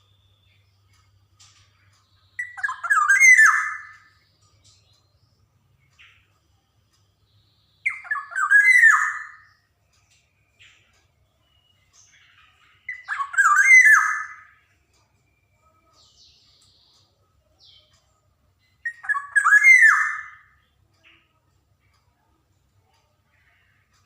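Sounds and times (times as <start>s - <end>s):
bird fluty whistled calls: 2.4s - 4.1s, 7.8s - 9.5s, 12.9s - 14.6s, 18.8s - 20.6s.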